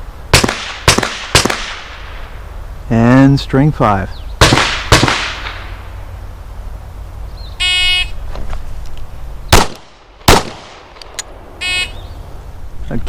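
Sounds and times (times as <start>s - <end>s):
loud pistol shots: 0.3s - 2.0s, 4.4s - 5.7s, 9.5s - 11.0s
gunshot echo: 0.4s - 2.2s, 4.4s - 5.8s, 9.5s - 11.0s.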